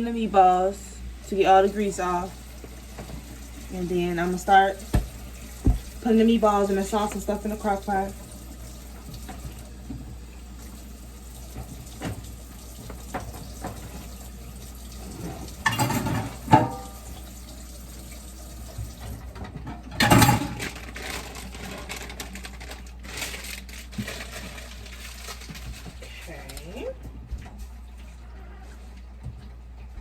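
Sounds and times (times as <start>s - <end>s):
water running at sink: 0.0s - 30.0s
splashing and clatter: 19.0s - 26.8s.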